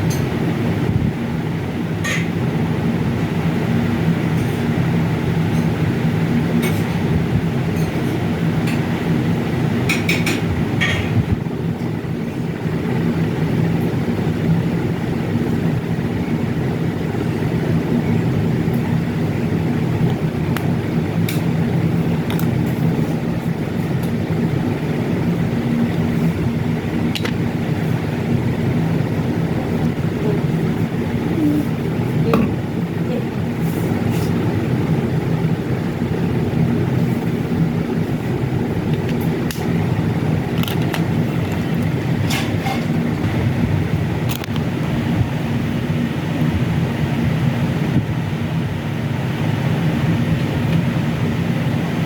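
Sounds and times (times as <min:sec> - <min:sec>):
faint hum: 0:00.0 - 0:52.0
low rumbling drone: 0:14.8 - 0:48.8.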